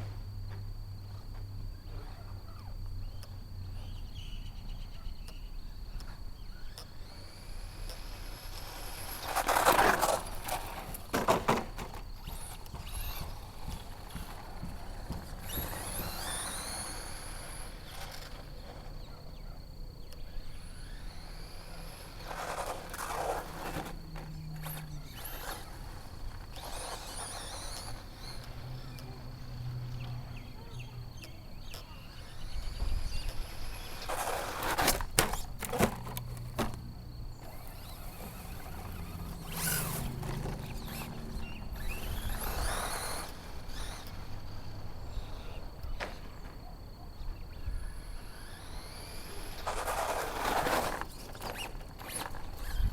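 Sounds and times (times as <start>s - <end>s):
electric motor whining: 5.0s - 52.9s
rough tyre noise: 7.5s - 19.2s, 20.4s - 46.7s, 47.9s - 52.9s
toy truck knocking on ground: 9.3s - 17.0s, 33.9s - 36.8s.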